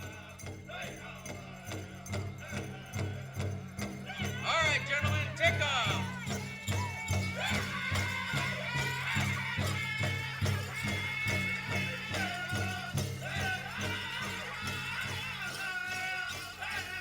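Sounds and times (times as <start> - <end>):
large drum steady beat: 0.0 - 16.9
high voices singing: 0.0 - 17.0.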